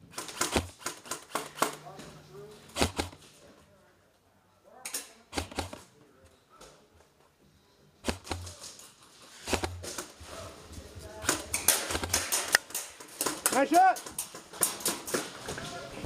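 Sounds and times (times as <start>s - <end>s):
airsoft guns firing: 0.1s - 1.8s, 2.7s - 3.2s, 5.3s - 5.9s, 8.0s - 8.6s, 9.4s - 10.1s, 11.2s - 15.3s.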